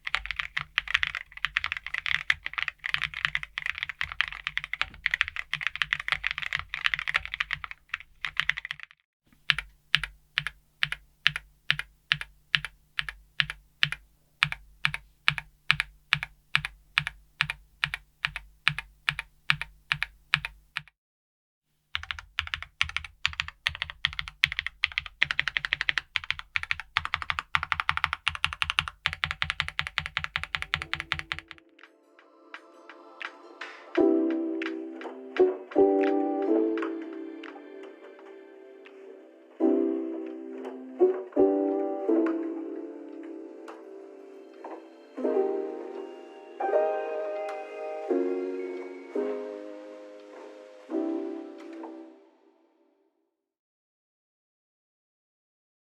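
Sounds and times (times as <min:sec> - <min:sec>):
typing on a keyboard: 0:00.0 - 0:20.9, 0:21.9 - 0:31.7.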